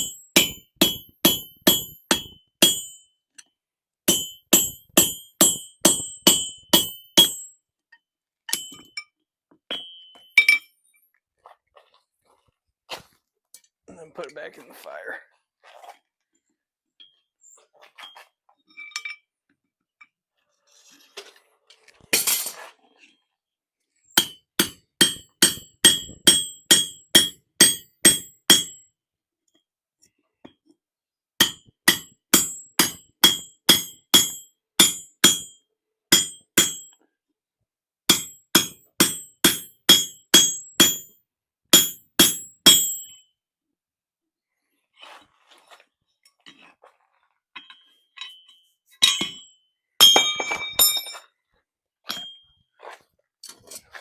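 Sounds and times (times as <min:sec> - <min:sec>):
hammer striking punch ringing: 0:00.0 - 0:03.0, 0:04.1 - 0:07.5, 0:24.2 - 0:28.8, 0:31.4 - 0:35.5, 0:36.1 - 0:36.9, 0:38.1 - 0:41.1, 0:41.8 - 0:43.1.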